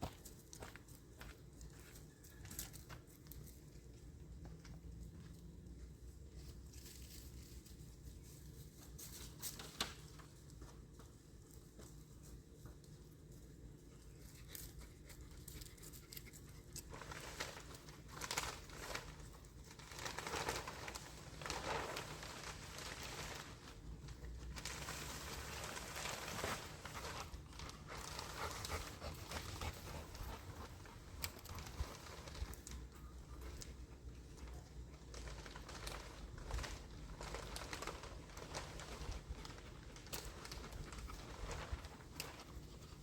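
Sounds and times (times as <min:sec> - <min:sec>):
plastic sheeting rustling: 0:16.9 - 0:33.8, 0:34.4 - 0:43.0.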